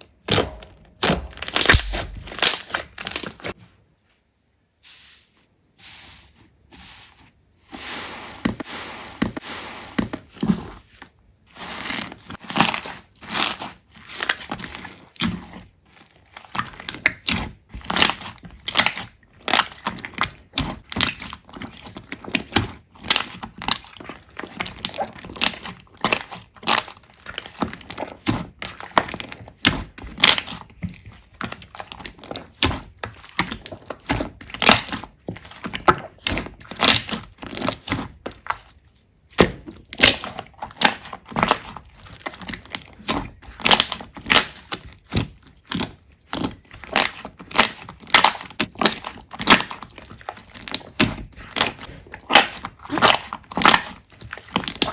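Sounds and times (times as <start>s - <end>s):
slime crackling and popping: 0.2s - 3.6s, 16.3s - 30.8s, 31.4s - 38.6s, 39.8s - 54.9s.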